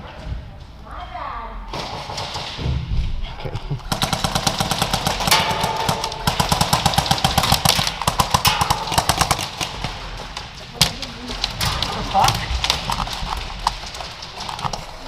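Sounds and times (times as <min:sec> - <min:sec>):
airsoft guns firing on full auto: 0:01.7 - 0:02.6, 0:03.9 - 0:14.8.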